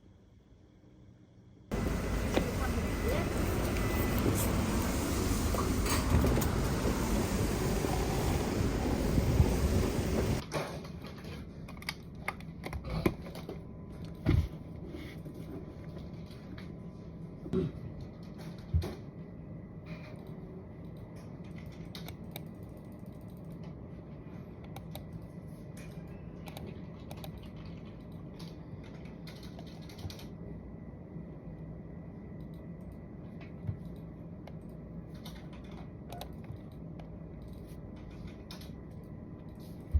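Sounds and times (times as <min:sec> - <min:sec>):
typing on computer keyboard: 0:26.4 - 0:30.3.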